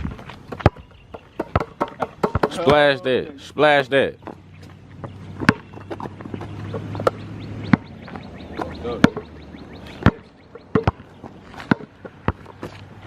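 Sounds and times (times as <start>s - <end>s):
basketball bouncing on court: 0.5s - 2.5s, 5.0s - 12.9s.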